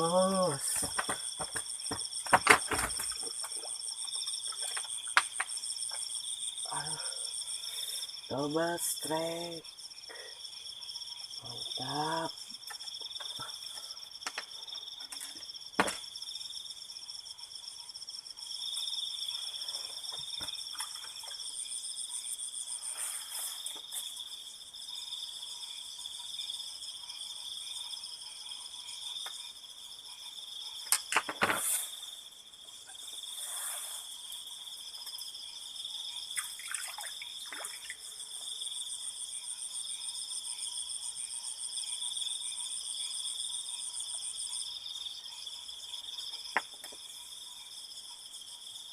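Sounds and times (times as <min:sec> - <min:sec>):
night insects chirring: 0:00.0 - 0:48.9
sharp knocks: 0:15.8 - 0:16.0.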